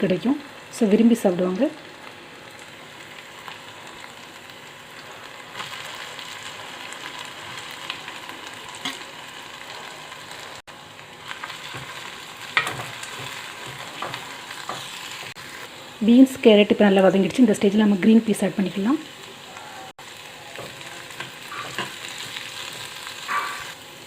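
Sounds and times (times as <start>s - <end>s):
vegetables sizzling in a pan: 0.0s - 24.0s
spoon scraping a pan: 20.6s - 23.8s.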